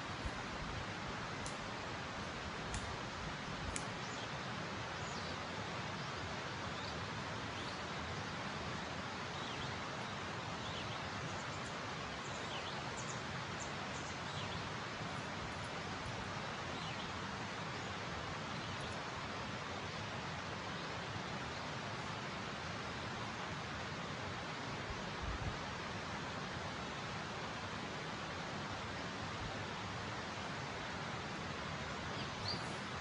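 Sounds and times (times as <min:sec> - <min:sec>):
outdoor hiss: 0:00.0 - 0:33.0
light clicks: 0:02.7 - 0:02.9, 0:03.7 - 0:04.0.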